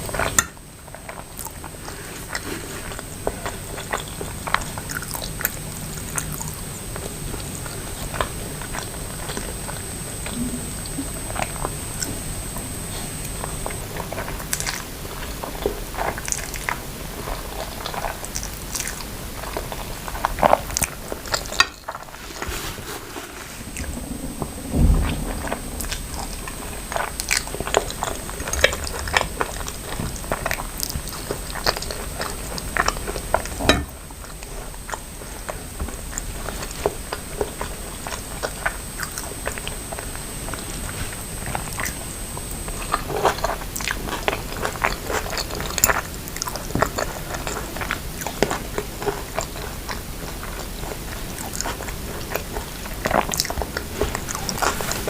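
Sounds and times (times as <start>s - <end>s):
chewing and biting food: 0.0s - 22.5s, 25.2s - 55.0s
soft low thump: 23.6s - 27.4s.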